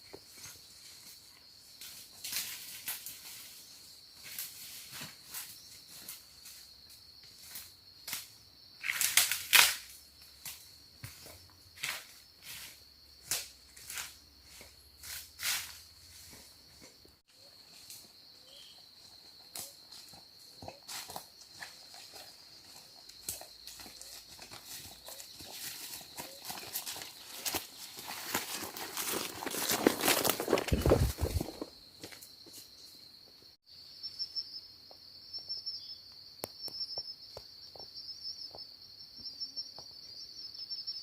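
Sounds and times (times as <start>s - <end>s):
high-pitched insect trill: 0.0s - 41.0s
crackling and rustling of dry litter: 19.6s - 32.2s.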